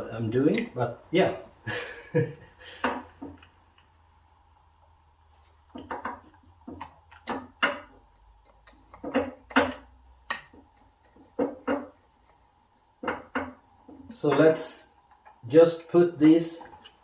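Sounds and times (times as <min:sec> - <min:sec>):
tools clicking and knocking: 0:05.7 - 0:15.4.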